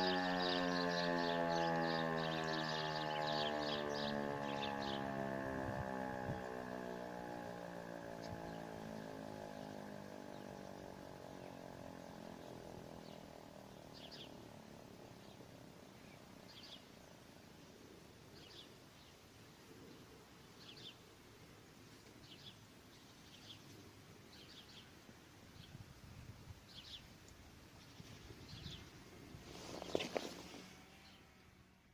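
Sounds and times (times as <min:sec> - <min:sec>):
bird chirps: 0:00.0 - 0:05.1, 0:12.4 - 0:14.4
motor siren running down: 0:00.0 - 0:15.6
faint outdoor background noise: 0:00.0 - 0:31.9.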